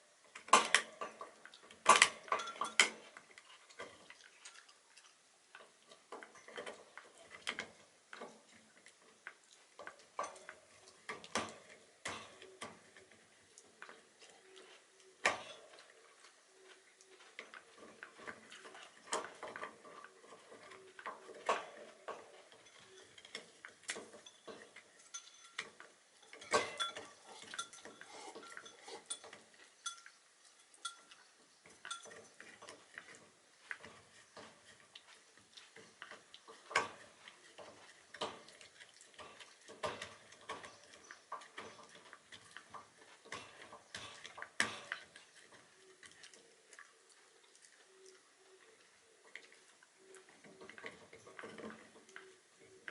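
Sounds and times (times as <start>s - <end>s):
dog gnawing on hard chew: 30.8s - 48.2s.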